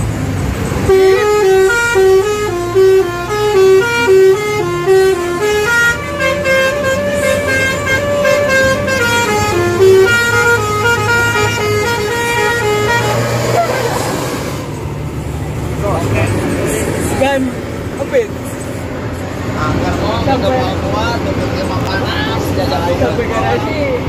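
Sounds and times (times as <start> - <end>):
bus engine rumble: 0.0 - 24.0
musical multi-tone bus horn: 0.8 - 14.7.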